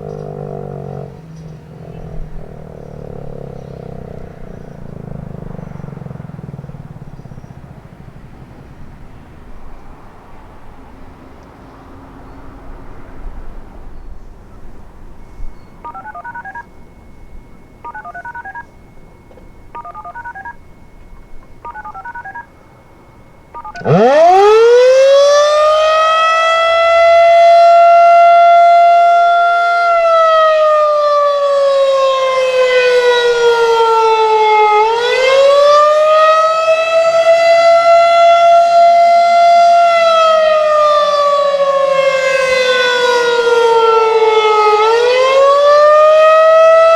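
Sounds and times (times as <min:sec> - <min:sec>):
warning siren wailing: 0:00.0 - 0:46.9
faint short beeping: 0:15.1 - 0:23.9.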